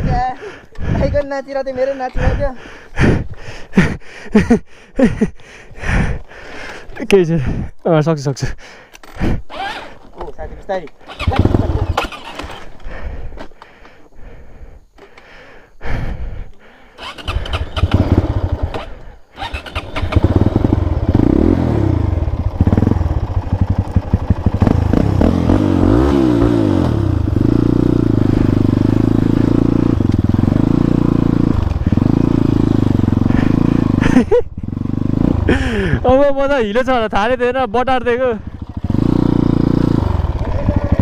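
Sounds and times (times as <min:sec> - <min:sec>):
motorcycle engine revving: 0:09.0 - 0:10.3, 0:11.0 - 0:13.2, 0:17.0 - 0:41.0.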